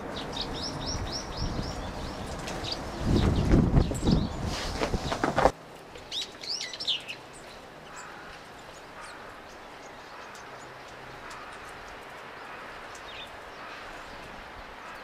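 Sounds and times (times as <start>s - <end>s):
small birds chirping: 0.0s - 15.0s.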